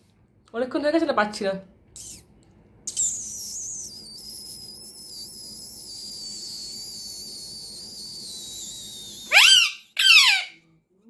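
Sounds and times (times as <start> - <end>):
high-pitched whistle: 2.9 - 10.5.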